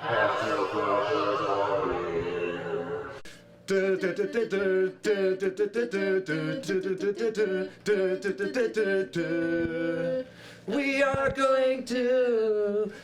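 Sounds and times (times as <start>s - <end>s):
man and woman singing a cappella: 0.0s - 13.0s
singers breathing: 10.3s - 10.7s.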